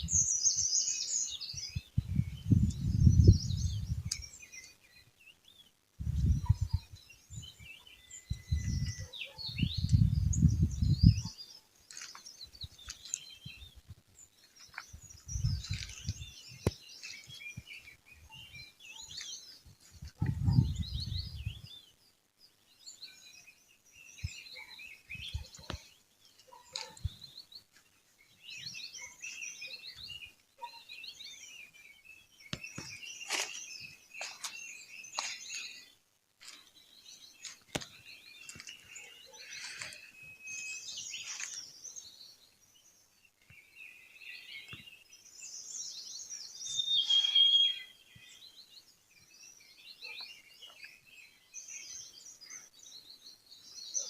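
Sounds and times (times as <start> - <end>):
songbirds chirping: 0.0 - 54.0
bird whistled note: 47.0 - 47.9.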